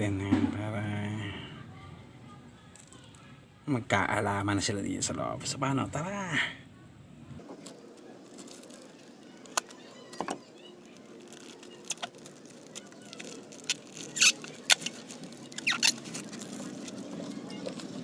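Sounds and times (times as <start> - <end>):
plastic bag crinkling: 7.5 - 18.0.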